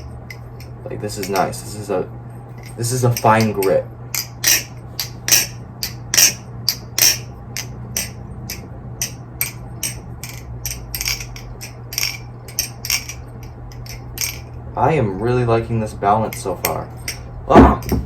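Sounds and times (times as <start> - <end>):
butterfly knife clacking: 2.6 - 14.4.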